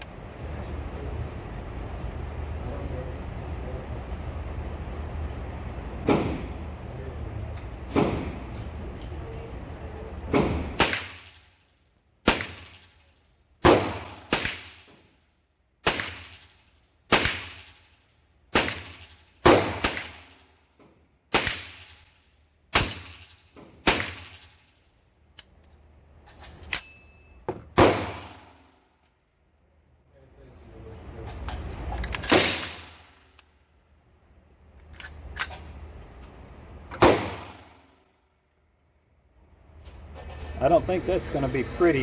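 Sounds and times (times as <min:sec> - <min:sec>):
rifle gunshots with echo: 0:10.4 - 0:11.4, 0:12.2 - 0:12.9, 0:13.6 - 0:14.9, 0:15.8 - 0:17.8, 0:18.5 - 0:20.4, 0:21.3 - 0:22.0, 0:27.8 - 0:28.6, 0:32.2 - 0:33.2, 0:37.0 - 0:37.9.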